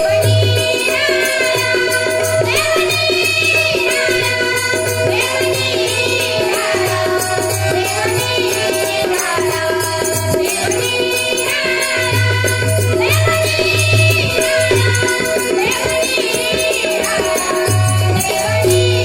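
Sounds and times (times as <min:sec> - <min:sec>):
hand percussion rattling beat: 0:00.0 - 0:19.0
harmonium playing held notes: 0:17.4 - 0:19.0.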